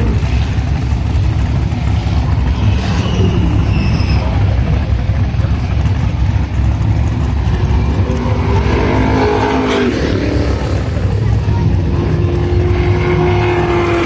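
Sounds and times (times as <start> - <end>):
car engine revving: 0.0 - 14.0
deep rumble of car engines: 0.0 - 14.0.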